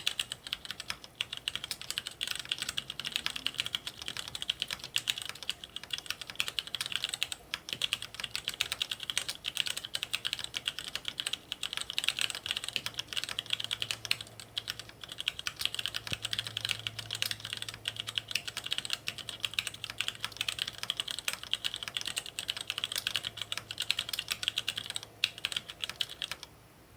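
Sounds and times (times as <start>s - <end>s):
mechanical keyboard typing: 0.0s - 26.5s.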